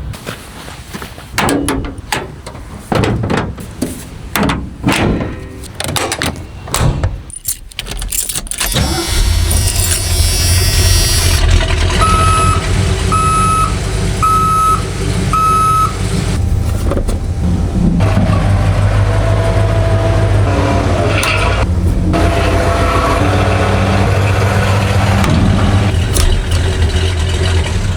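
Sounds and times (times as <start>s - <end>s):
clicks and knocks: 1.4s - 8.8s
truck engine cranking and idling: 6.3s - 27.9s
electronic warning beeps: 12.0s - 18.1s.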